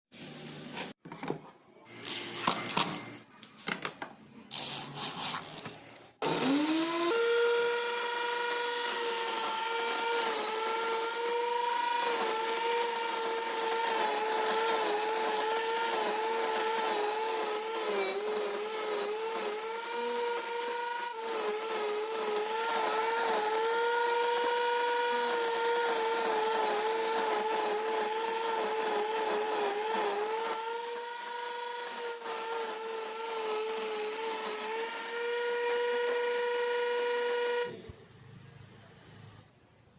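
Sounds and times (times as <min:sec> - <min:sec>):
power tool motor whining: 0:06.2 - 0:37.8.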